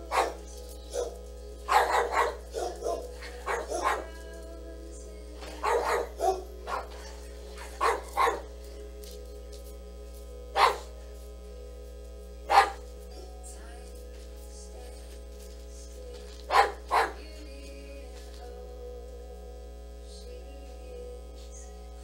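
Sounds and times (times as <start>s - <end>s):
dog barking: 0.0s - 4.2s, 5.5s - 8.5s, 10.6s - 10.9s, 12.5s - 12.8s, 16.5s - 17.3s.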